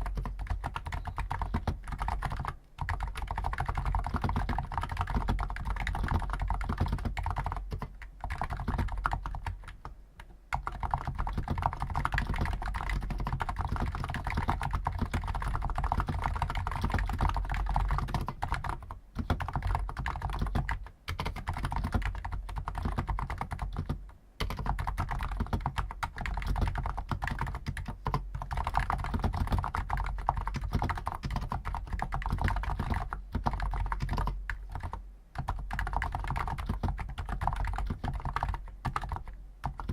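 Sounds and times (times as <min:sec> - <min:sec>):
fast keyboard typing: 0:00.0 - 0:39.9.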